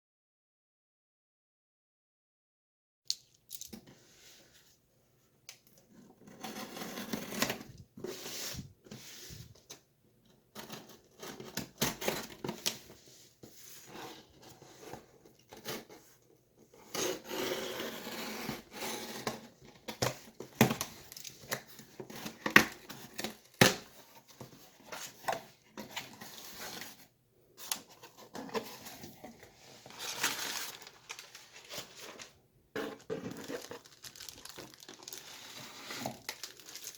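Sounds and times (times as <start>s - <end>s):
packaging tearing and crinkling: 29.9s - 36.9s.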